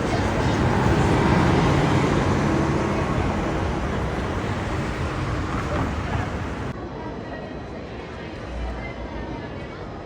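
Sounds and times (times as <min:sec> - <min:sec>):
vehicle engine rumbling: 0:00.0 - 0:06.8.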